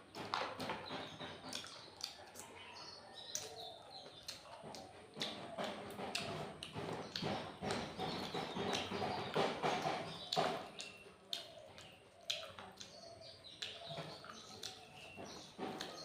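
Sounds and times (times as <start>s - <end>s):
chewing and lip-smacking: 0.1s - 16.0s
wet mouth clicks: 1.4s - 2.6s, 10.2s - 16.0s.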